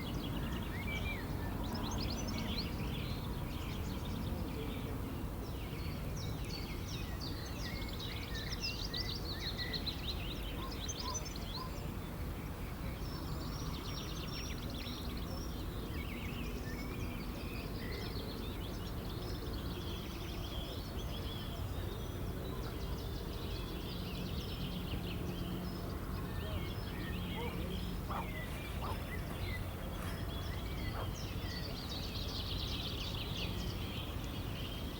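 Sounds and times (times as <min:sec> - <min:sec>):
birds chirping and singing: 0:26.4 - 0:32.7.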